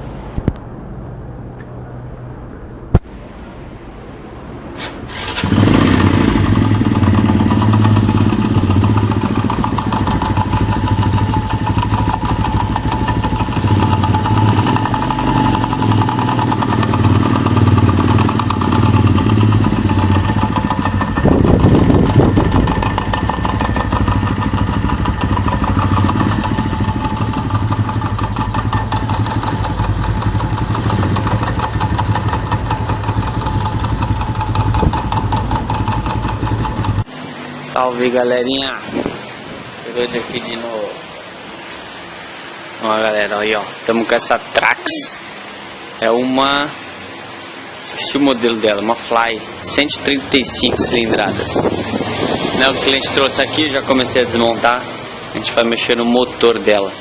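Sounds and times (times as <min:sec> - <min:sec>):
engine revving: 0:04.8 - 0:38.2, 0:48.2 - 0:57.0
motorcycle engine idling: 0:05.1 - 0:37.1
rapid engine knocking: 0:05.5 - 0:37.1.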